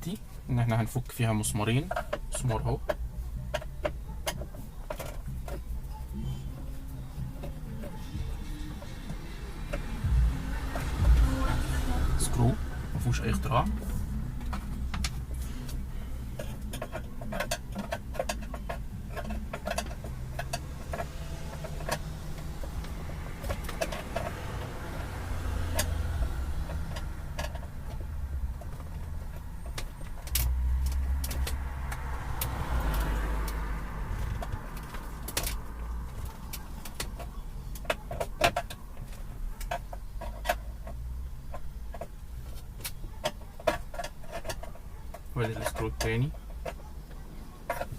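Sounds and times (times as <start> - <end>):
steady low rumble: 5.3 - 37.7.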